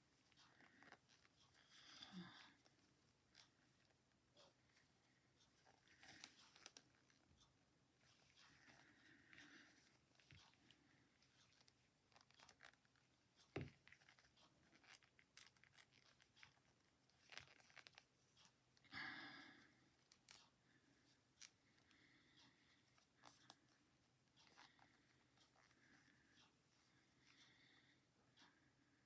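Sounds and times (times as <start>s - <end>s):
knitting needles clicking: 0.0s - 18.9s.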